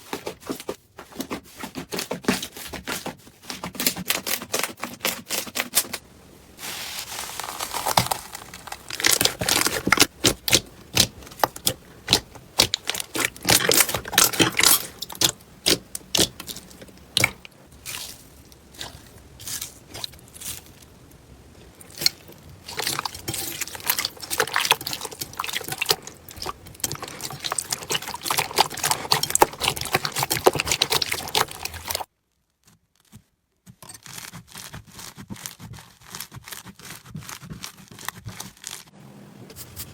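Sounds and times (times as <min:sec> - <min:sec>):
hands squishing slime: 0:06.6 - 0:32.1, 0:34.0 - 0:38.9.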